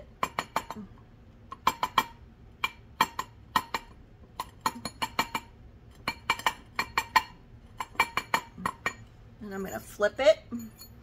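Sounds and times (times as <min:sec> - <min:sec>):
hammer tapping metal ring: 0:00.2 - 0:00.8, 0:01.5 - 0:09.1.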